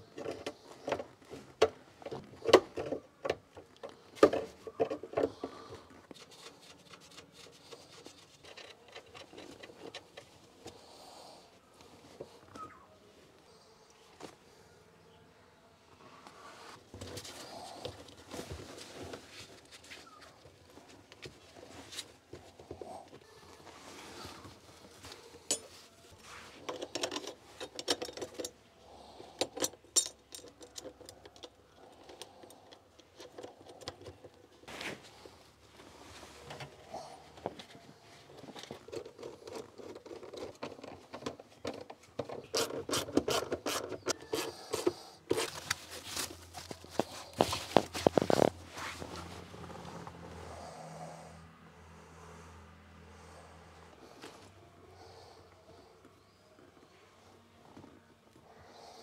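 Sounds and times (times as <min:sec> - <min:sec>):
small metal parts clicking: 0:26.7 - 0:28.6, 0:29.4 - 0:34.2.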